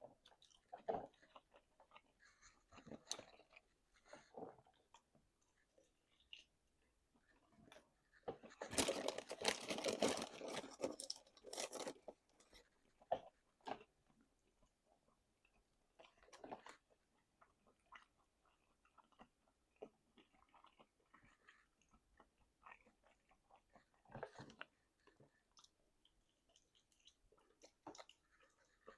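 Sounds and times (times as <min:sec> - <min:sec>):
chewing clicks: 0:00.2 - 0:05.0, 0:17.4 - 0:28.9
crunching chicken wings: 0:08.5 - 0:12.2.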